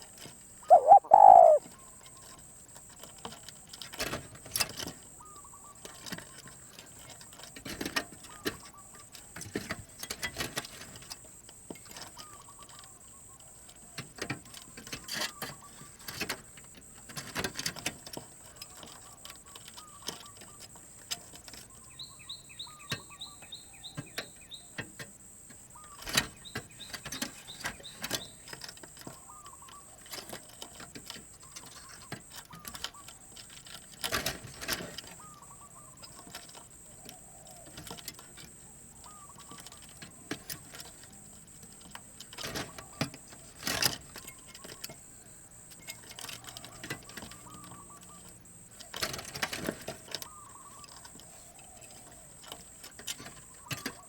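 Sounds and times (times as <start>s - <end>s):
small bird trilling: 0.6s - 1.6s
dove cooing: 0.6s - 1.9s, 34.1s - 41.2s, 46.2s - 54.0s
sharp clicks: 0.7s - 1.6s.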